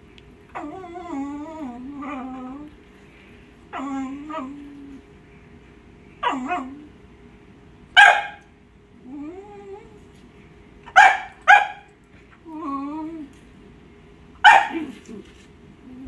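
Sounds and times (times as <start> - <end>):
dog whining: 0.5 - 2.8, 3.7 - 5.1, 6.2 - 7.0, 14.4 - 16.0
dog barking: 8.0 - 8.5, 10.9 - 11.9, 14.4 - 15.0.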